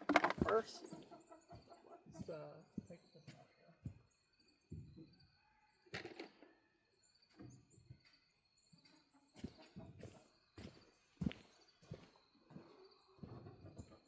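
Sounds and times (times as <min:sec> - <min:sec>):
handling knocks and rustles: 0:00.0 - 0:00.8
small birds chirping: 0:00.0 - 0:14.0.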